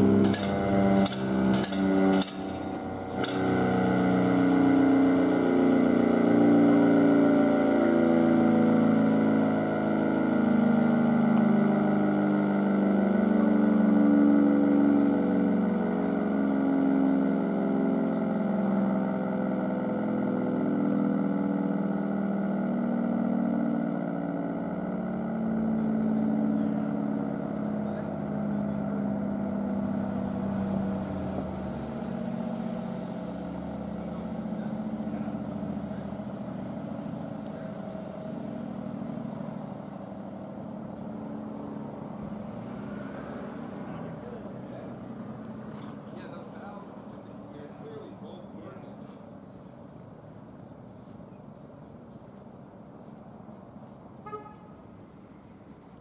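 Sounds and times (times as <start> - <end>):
siren winding down: 0.0 - 16.6.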